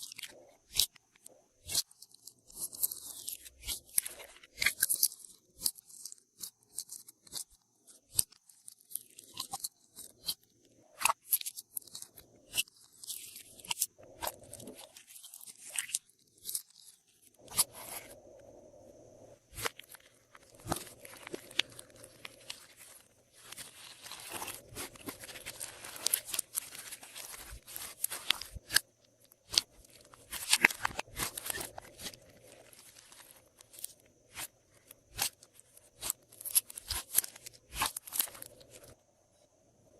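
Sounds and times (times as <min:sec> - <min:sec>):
slime crackling and popping: 0:19.5 - 0:38.6.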